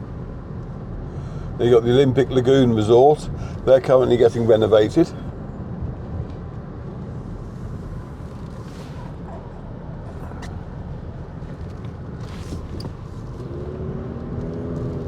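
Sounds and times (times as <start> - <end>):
car road and engine noise: 0.0 - 15.0
wind rumbling on microphone: 5.2 - 15.0.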